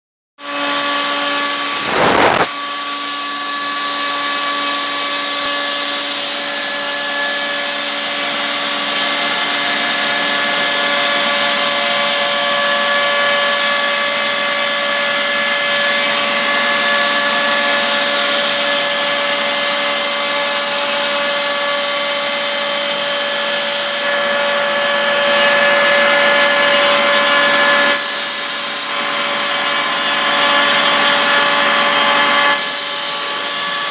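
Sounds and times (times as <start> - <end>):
machine whine: 0.4 - 33.9
cutting hiss: 1.6 - 2.7.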